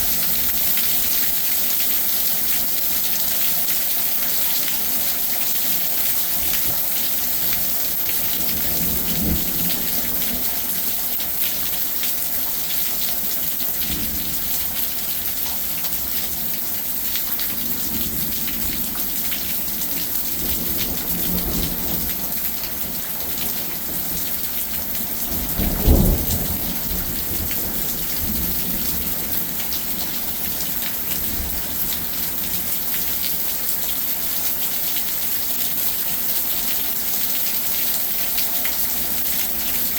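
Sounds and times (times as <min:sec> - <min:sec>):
loud thunderclap: 0:25.4 - 0:27.6.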